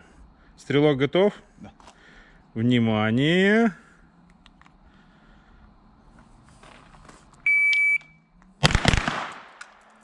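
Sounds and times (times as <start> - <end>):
shot timer beep: 7.5 - 8.2.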